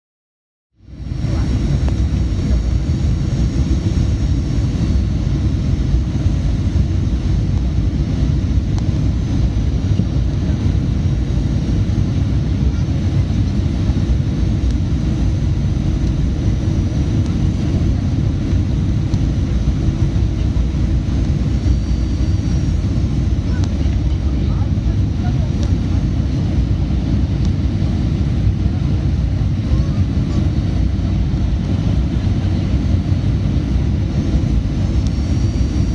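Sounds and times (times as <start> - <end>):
airplane engine noise: 0.8 - 35.9
wind buffeting microphone: 0.9 - 35.9
faint high whine: 12.4 - 26.9.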